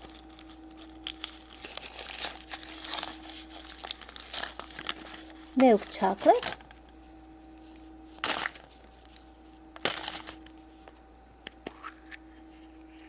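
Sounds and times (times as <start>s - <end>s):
foil wrapper crinkling: 0.0s - 11.0s
faint steady hum: 0.0s - 13.0s.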